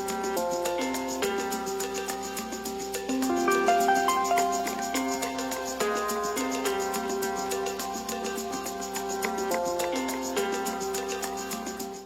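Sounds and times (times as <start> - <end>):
plucked guitar-like notes: 3.2 - 7.1
steady beat: 3.3 - 6.5.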